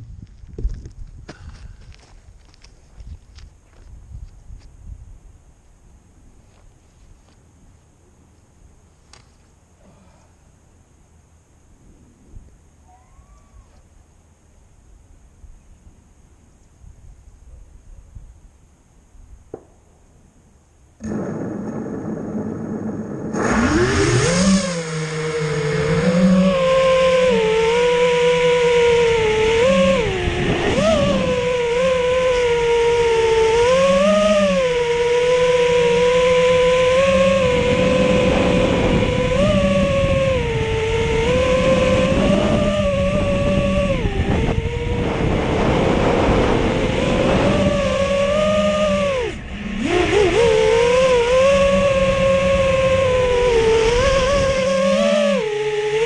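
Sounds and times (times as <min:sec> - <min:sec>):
low wind rumble: 0:00.0 - 0:06.8, 0:09.7 - 0:56.0
quadcopter motors whining: 0:21.0 - 0:56.0.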